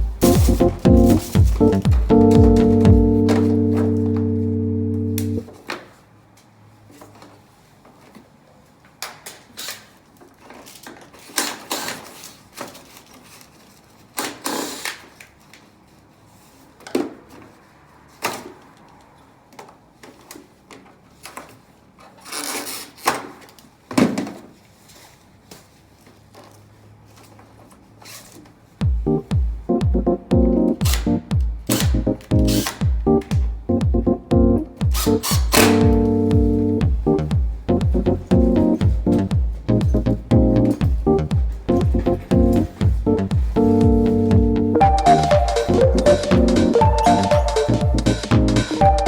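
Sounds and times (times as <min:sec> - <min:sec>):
knocks and clicks of tools: 0:30.8 - 0:33.6, 0:34.8 - 0:36.3.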